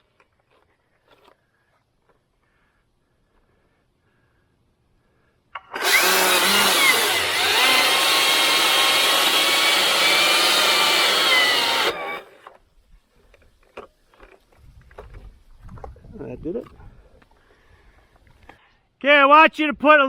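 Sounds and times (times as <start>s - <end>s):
electric chainsaw whining: 5.6s - 12.5s.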